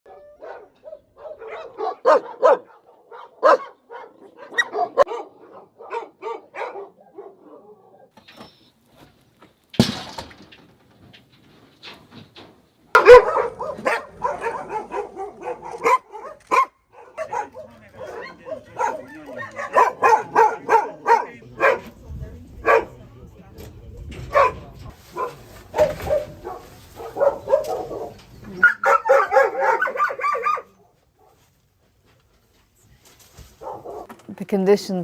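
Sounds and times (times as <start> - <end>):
dogs barking and yelping: 0.1 - 8.6, 13.0 - 21.8, 24.3 - 24.6, 25.2 - 31.4.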